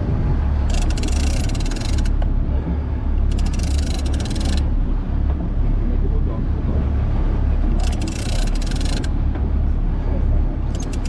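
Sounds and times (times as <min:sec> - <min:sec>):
steady low rumble: 0:00.0 - 0:11.0
fishing reel rapid clicking: 0:00.7 - 0:02.2, 0:03.3 - 0:04.7, 0:07.8 - 0:09.1, 0:10.7 - 0:11.0.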